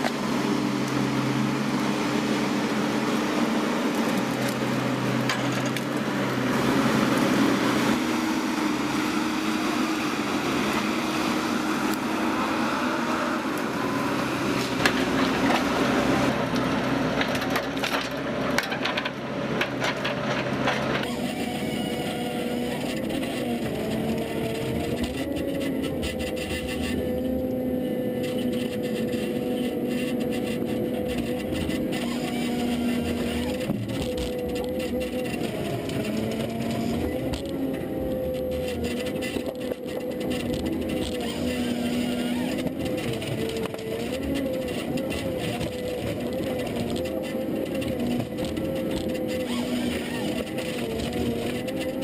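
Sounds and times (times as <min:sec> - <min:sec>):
wood-processing machinery running: 0:00.0 - 0:52.0
wood cracking and splintering: 0:14.4 - 0:27.5, 0:28.4 - 0:52.0.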